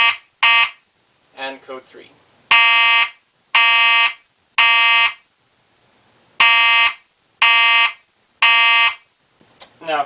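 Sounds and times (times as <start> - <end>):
fire alarm horn blasts: 0.0 - 0.8, 2.5 - 5.2, 6.4 - 9.1.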